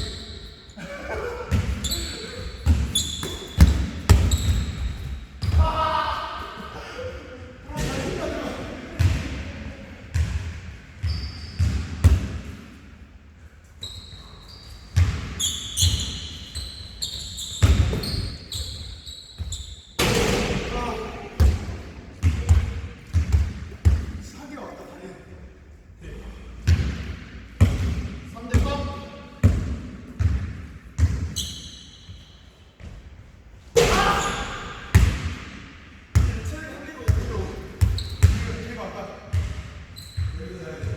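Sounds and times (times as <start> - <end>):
sneaker squeaks: 0.0 - 5.9, 11.0 - 12.2, 13.8 - 20.3, 30.2 - 33.2, 33.8 - 35.0, 37.1 - 38.6, 39.3 - 40.9
basketball bouncing on gym floor: 1.5 - 5.8, 10.1 - 12.6, 15.0 - 16.3, 17.3 - 18.7, 21.4 - 24.2, 26.6 - 31.5, 33.8 - 36.5, 37.1 - 38.6, 39.3 - 40.9.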